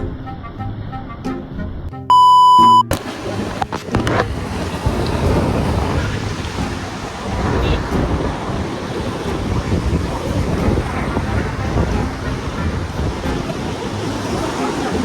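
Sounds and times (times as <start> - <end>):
sea surf on beach: 2.1 - 15.0
wind on microphone: 3.0 - 15.0.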